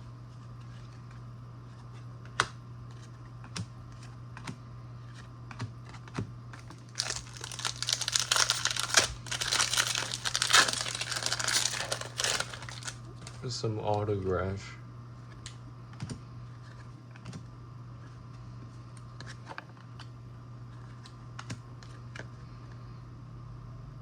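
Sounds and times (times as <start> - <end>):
foil wrapper tearing and crinkling: 6.6 - 13.0
trading cards clicking: 6.9 - 12.9.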